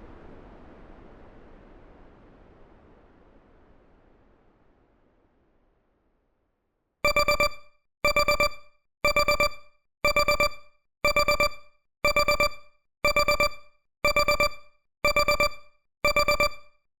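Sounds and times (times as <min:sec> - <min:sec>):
digital timer alarm beeping: 0:07.0 - 0:16.8.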